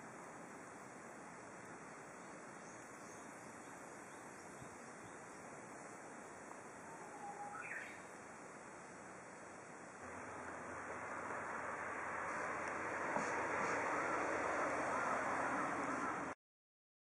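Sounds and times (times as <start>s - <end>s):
faint outdoor hiss: 0.0s - 16.4s
bird whistling song: 6.9s - 8.1s.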